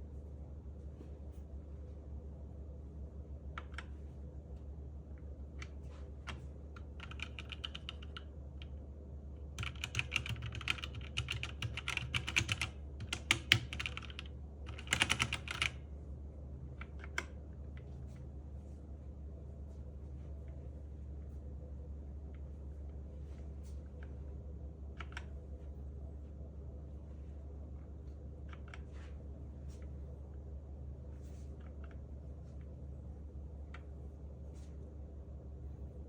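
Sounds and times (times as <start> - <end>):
steady low hum: 0.0 - 36.0
mechanical keyboard typing: 6.3 - 8.7, 9.6 - 15.8.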